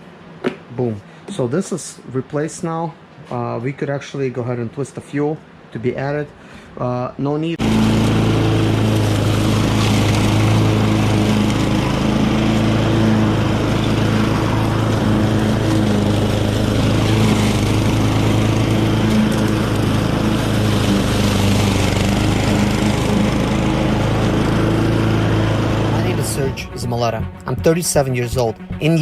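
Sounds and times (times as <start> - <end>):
lawnmower engine running: 7.6 - 29.0.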